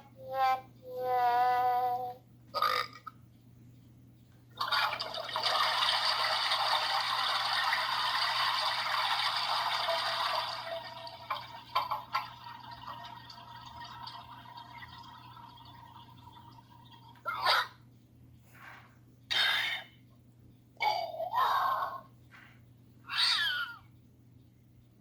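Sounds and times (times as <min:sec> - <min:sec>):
toilet flush sound effect: 0:04.6 - 0:17.1.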